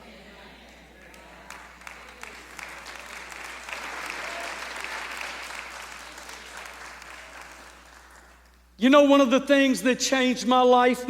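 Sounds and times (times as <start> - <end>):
congregation applauding: 1.0 - 8.7.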